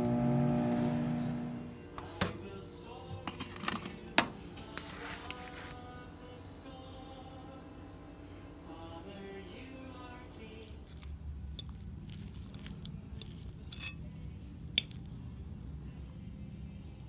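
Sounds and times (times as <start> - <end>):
background music: 0.0 - 11.0
low steady hum: 0.0 - 17.0
soft squishy sounds: 10.3 - 16.2.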